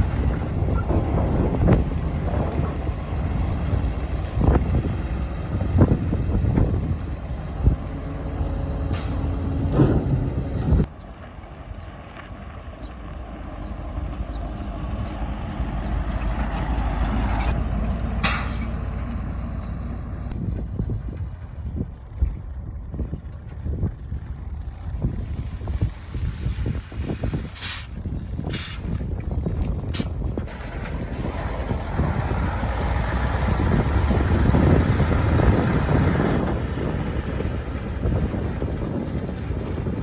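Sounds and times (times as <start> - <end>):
excavator diesel engine: 0.0 - 26.1, 29.8 - 40.0.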